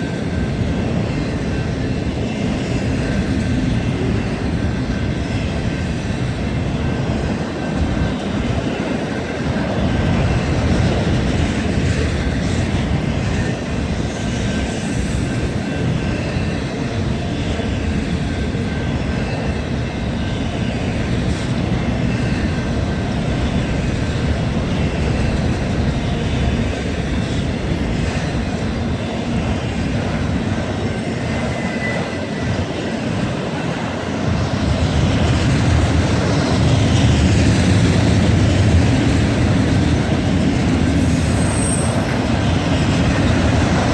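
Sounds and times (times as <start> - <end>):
train wheels rumbling on track: 0.0 - 43.9
faint wheel squeal: 41.0 - 42.4.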